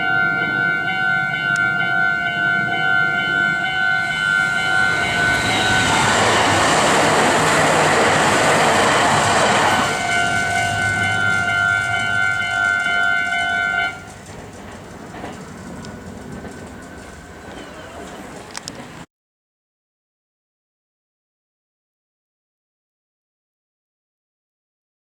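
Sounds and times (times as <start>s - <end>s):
crossing warning bell ringing: 0.0s - 19.0s
electric train rushing past: 0.0s - 19.1s.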